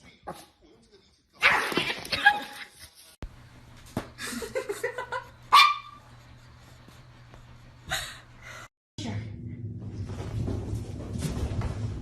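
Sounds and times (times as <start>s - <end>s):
dog barking loudly: 5.5s - 6.0s.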